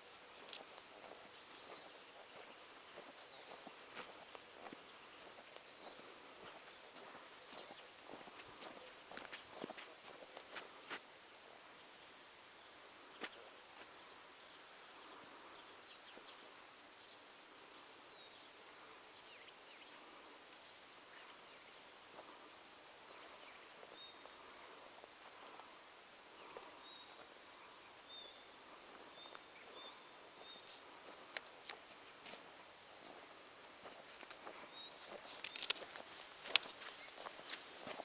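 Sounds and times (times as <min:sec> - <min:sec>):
background hiss: 0:00.0 - 0:38.0
distant birdsong: 0:00.0 - 0:38.0.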